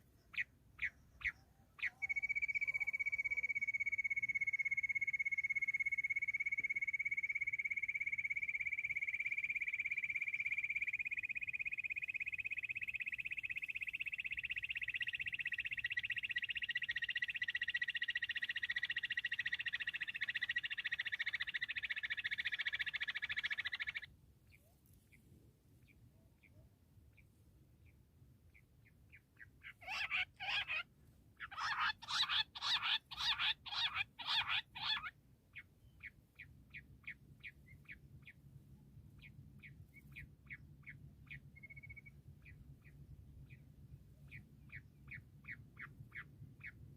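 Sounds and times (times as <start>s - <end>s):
quail call trill: 0.0s - 24.1s, 29.6s - 35.2s.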